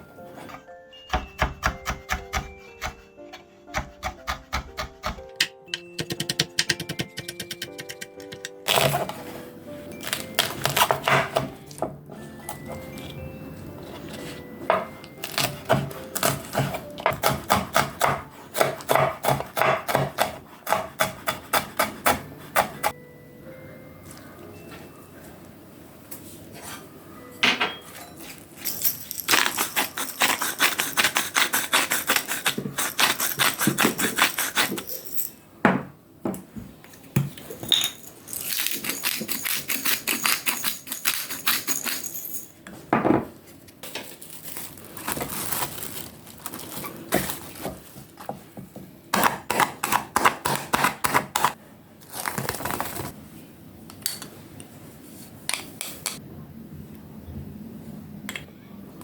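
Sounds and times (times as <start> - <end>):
knife chopping on cutting board: 1.1 - 3.1, 3.8 - 5.3, 15.4 - 22.9, 48.3 - 51.5.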